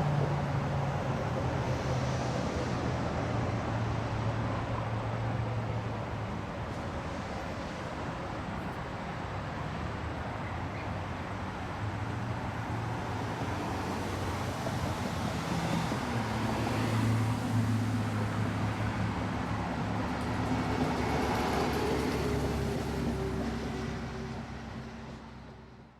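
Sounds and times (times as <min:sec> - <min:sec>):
highway traffic: 0:00.0 - 0:25.9.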